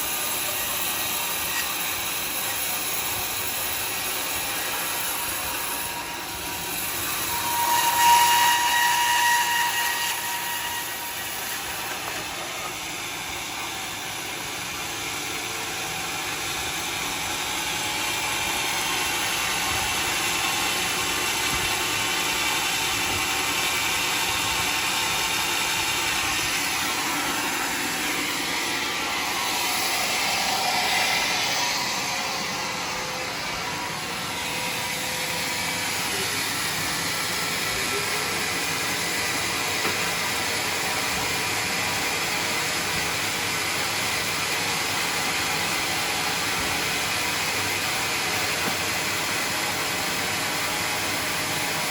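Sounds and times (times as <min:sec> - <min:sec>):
high saw whine: 0:00.0 - 0:51.9
sawmill saw cutting log: 0:00.0 - 0:51.9.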